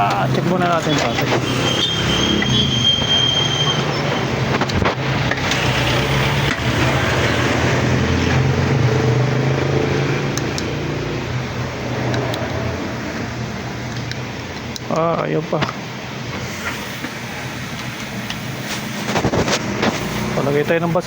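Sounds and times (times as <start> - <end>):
microwave hum and fan: 0.0 - 2.6
high whine: 0.0 - 8.9, 16.3 - 21.0
clicks: 16.4 - 21.0.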